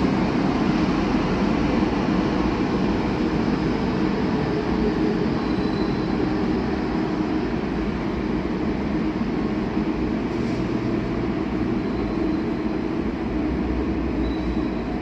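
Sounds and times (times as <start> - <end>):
tram rumbling with hum: 0.0 - 15.0.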